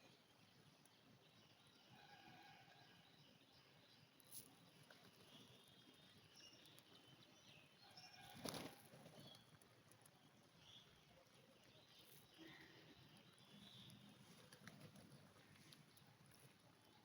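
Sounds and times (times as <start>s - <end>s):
faint bird chirps: 10.2s - 15.8s.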